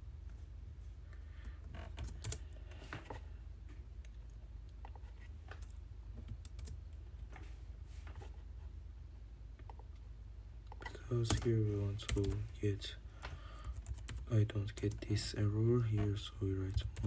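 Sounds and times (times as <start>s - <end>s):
steady low hum: 0.0s - 17.0s
computer keyboard typing: 1.9s - 2.5s, 6.2s - 6.9s, 10.7s - 12.5s, 13.6s - 15.4s, 16.6s - 17.0s.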